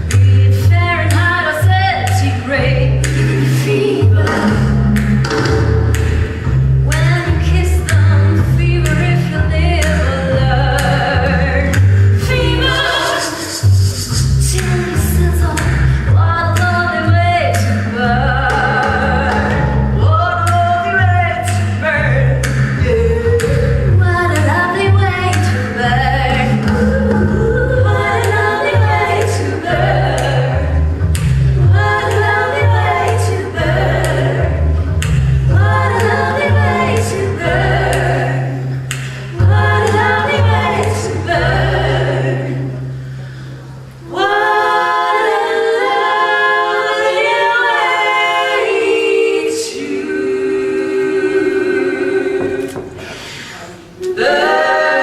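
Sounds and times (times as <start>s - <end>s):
deep bass part: 0.0s - 12.8s
singers in harmony: 0.0s - 55.0s
steady beat: 9.8s - 42.8s.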